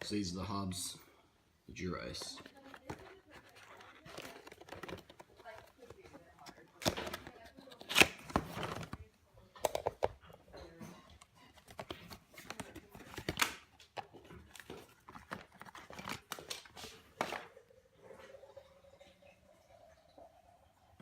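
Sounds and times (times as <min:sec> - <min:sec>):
packaging crinkling and rustling: 0:02.1 - 0:10.3, 0:11.2 - 0:17.5.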